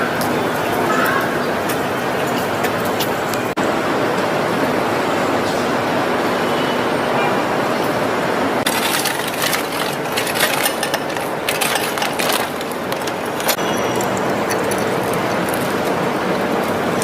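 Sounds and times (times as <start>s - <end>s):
sharp clicks and rattles: 8.6s - 17.0s.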